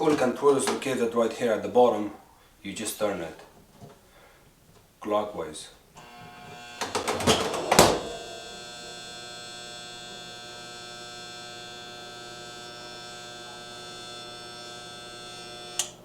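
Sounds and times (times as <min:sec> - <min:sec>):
refrigerator compressor humming: 0:06.0 - 0:16.0.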